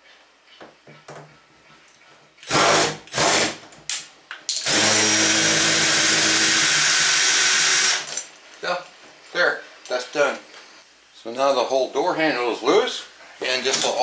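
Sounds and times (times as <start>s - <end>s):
cordless drill whirring: 4.7s - 8.1s.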